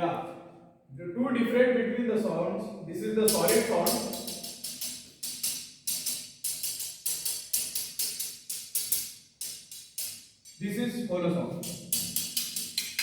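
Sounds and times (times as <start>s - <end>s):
metal tool tapping on tiles: 11.6s - 13.0s.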